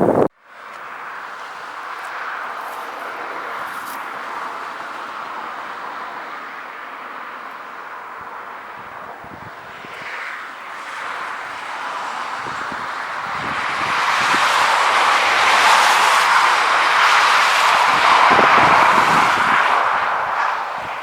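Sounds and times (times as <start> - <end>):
jet airliner engine rushing: 8.6 - 21.0.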